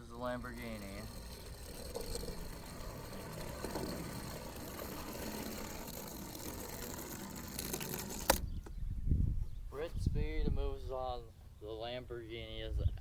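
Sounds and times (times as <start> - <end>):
toy cars rolling on a track: 0.0 - 8.4.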